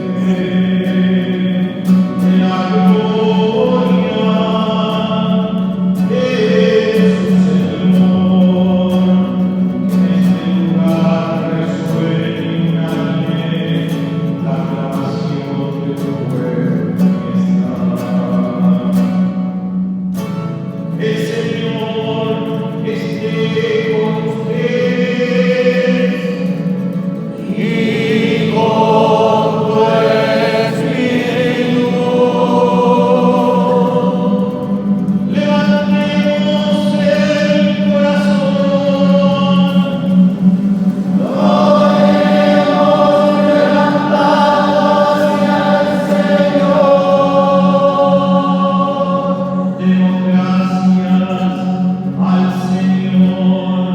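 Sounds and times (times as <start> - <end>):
choir singing chant: 0.0 - 13.8, 23.6 - 51.8
low sustained note: 39.6 - 49.8.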